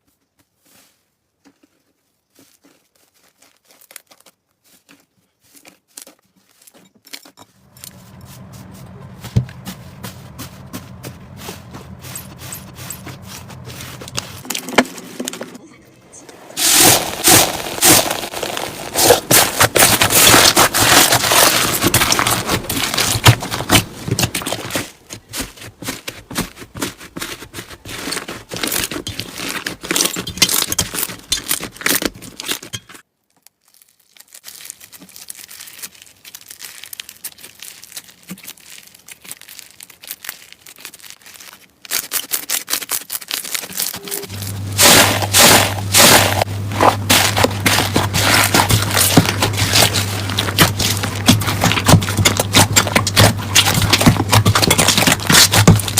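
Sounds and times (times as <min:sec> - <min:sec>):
slime crackling and popping: 0:16.6 - 0:24.6, 0:33.2 - 0:55.9.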